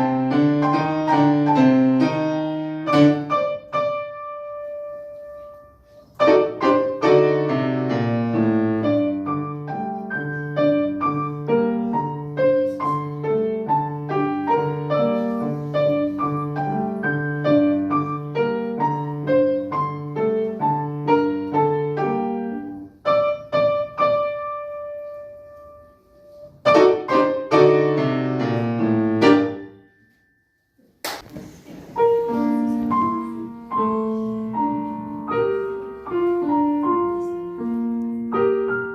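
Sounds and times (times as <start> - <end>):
solo piano piece: 0.0 - 29.9, 31.8 - 38.9.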